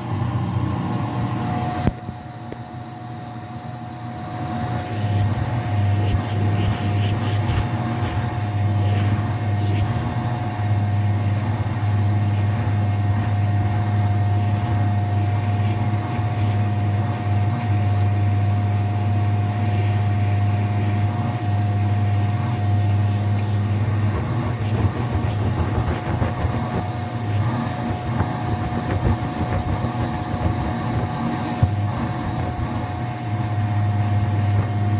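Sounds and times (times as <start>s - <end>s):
vacuum cleaner running on carpet: 0.0s - 34.9s.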